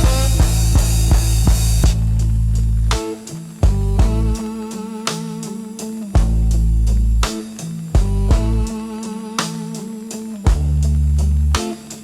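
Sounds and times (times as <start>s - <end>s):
drum hits: 0.0s - 2.0s
low bass: 0.0s - 4.6s, 6.2s - 8.8s, 10.5s - 11.6s.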